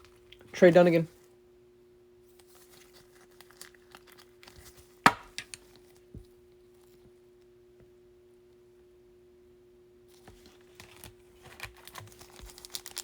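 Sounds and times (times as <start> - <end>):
cards and plastic sleeves rustling: 2.4 - 6.0, 10.1 - 13.0.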